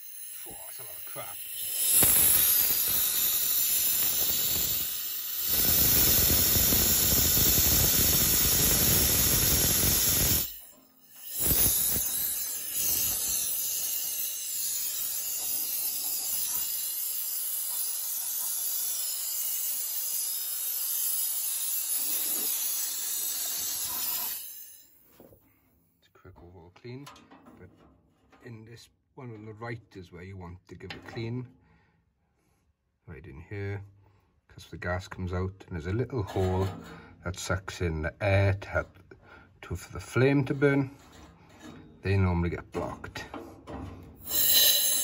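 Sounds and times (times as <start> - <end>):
compressed air hissing from nozzle: 0.5 - 10.6, 11.3 - 19.3, 19.9 - 25.0, 44.2 - 45.0.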